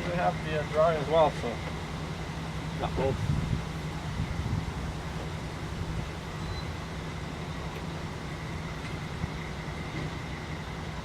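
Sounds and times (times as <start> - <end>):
low mechanical hum: 0.0 - 11.0.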